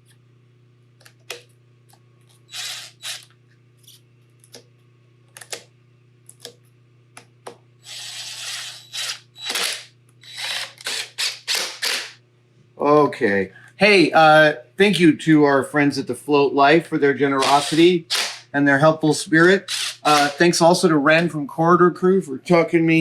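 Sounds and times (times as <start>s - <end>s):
steady low hum: 0.0s - 23.0s
power tool rasping bursts: 2.5s - 3.2s, 7.8s - 12.2s, 17.4s - 18.5s, 19.6s - 20.4s.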